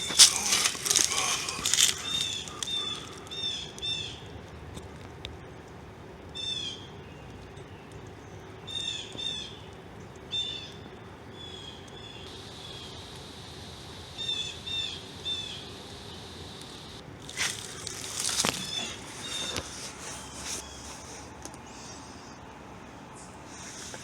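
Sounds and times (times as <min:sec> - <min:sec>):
small bird singing: 0:01.5 - 0:04.2.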